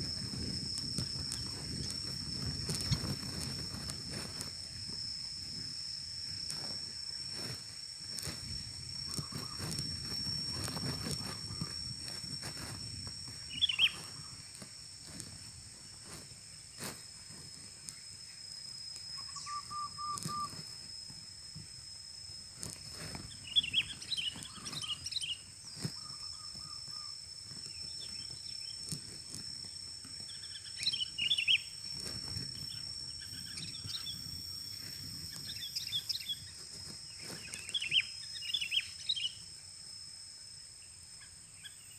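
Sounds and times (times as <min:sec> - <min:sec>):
high-pitched insect drone: 0:00.0 - 0:41.9
birds chirping: 0:13.3 - 0:14.5, 0:23.2 - 0:28.8, 0:30.2 - 0:31.8.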